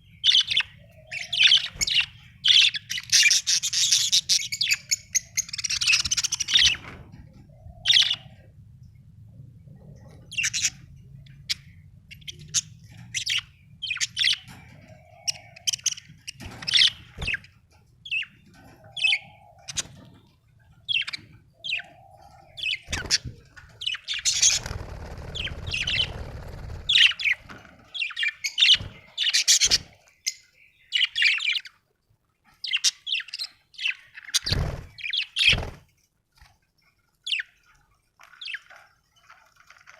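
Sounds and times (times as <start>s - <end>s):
budgerigars chirping: 0.2s - 6.8s, 7.8s - 8.4s, 10.2s - 20.1s, 20.9s - 27.4s, 28.0s - 31.7s.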